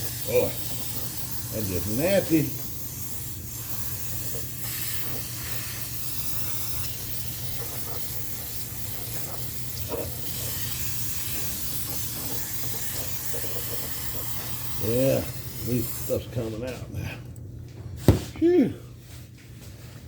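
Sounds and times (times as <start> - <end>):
aerosol spray hissing: 0.0 - 16.4.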